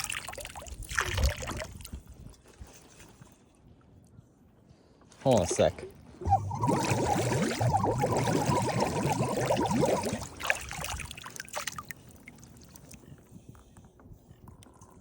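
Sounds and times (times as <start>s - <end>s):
air horn gurgling underwater: 6.2s - 11.2s
faint fizzing and crackles: 6.2s - 15.0s.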